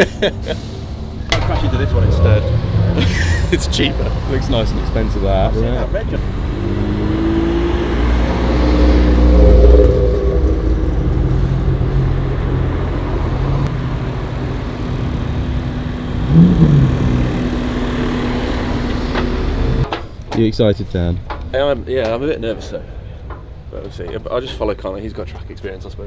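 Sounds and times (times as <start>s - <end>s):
car engine revving: 0.8s - 19.9s.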